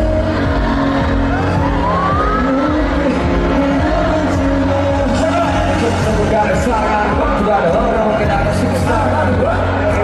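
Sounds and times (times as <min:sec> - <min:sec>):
background music: 0:00.0 - 0:10.0.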